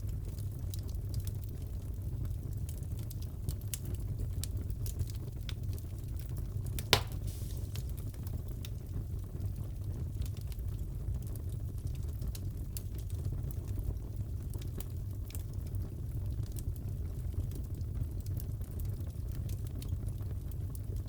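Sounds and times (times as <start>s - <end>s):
fire crackling: 0.0s - 21.0s
fire rumbling: 0.0s - 21.0s
loud fire pop: 6.8s - 8.2s.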